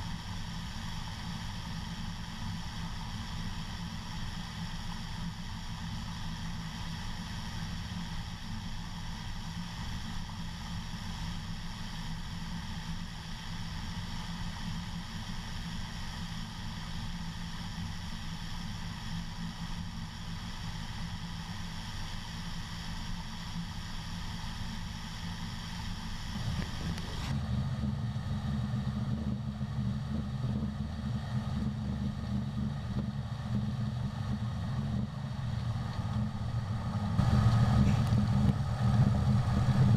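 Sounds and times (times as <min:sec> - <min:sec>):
heavy farm machinery droning: 0:23.0 - 0:39.9.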